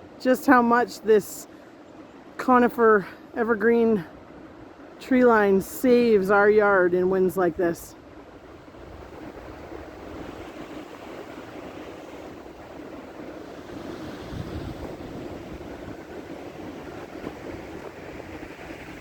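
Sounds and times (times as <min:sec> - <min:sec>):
blizzard wind through trees: 0:00.0 - 0:19.0
wind buffeting microphone: 0:07.6 - 0:19.0.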